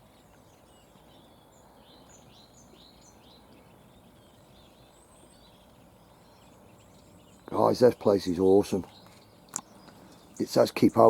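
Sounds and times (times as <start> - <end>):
birds chirping: 0.0 - 11.0
outdoor background hiss: 0.0 - 11.0.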